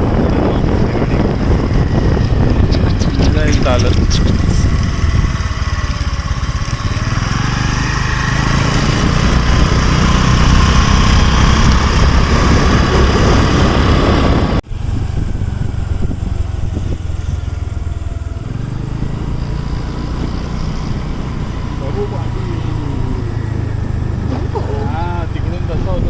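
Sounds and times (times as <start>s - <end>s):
noisy wash: 0.0s - 15.6s
engine rumbling: 0.0s - 26.0s.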